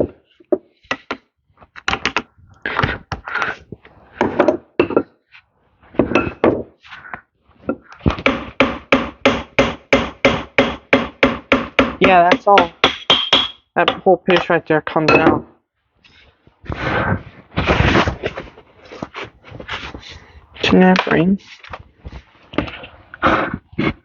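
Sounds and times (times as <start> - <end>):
hammer striking metal part: 8.2 - 15.4.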